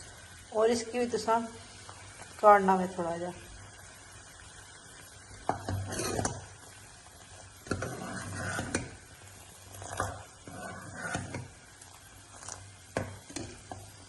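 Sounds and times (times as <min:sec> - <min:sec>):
utensils clicking on cooking pot: 0:05.4 - 0:06.5, 0:07.6 - 0:09.0, 0:09.7 - 0:11.6, 0:12.3 - 0:14.0.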